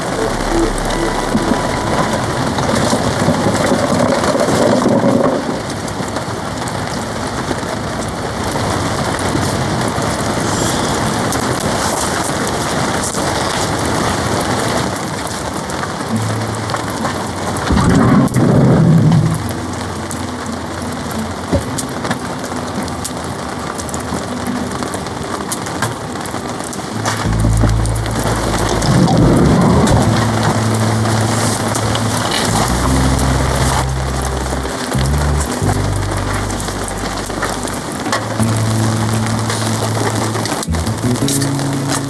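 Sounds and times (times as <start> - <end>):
low rumble: 0.0 - 5.4, 27.2 - 42.0
heavy rain drumming on a tarp: 0.0 - 42.0.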